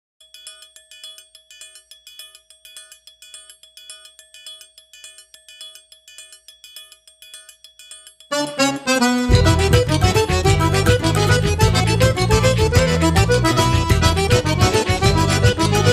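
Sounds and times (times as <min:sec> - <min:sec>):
full-band music: 0:08.4 - 0:15.9.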